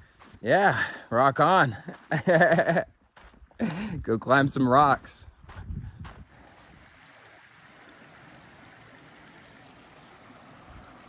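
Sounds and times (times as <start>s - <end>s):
river flowing: 6.4s - 11.0s.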